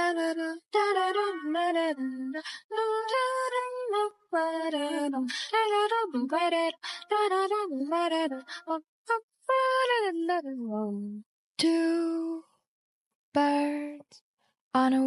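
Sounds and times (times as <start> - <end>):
high-pitched person singing: 11.6 - 12.4.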